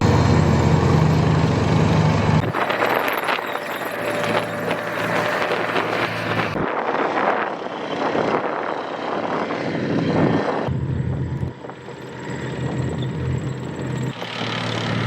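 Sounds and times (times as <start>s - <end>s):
low engine hum: 0.0s - 6.8s, 10.0s - 15.0s
heavy engine noise: 0.0s - 15.0s.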